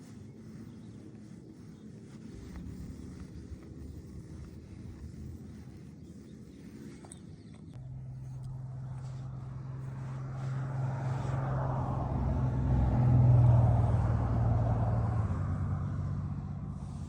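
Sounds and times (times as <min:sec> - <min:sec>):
motor vehicle passing by: 0:07.8 - 0:17.0.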